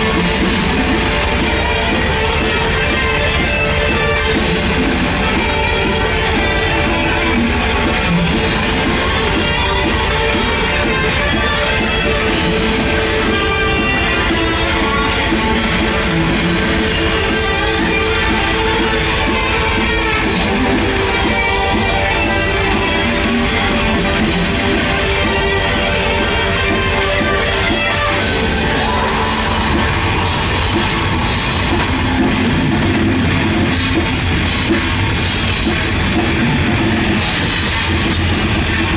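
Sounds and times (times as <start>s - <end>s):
electric guitar: 0.0s - 38.9s
heavy metal band playing live: 0.0s - 38.9s.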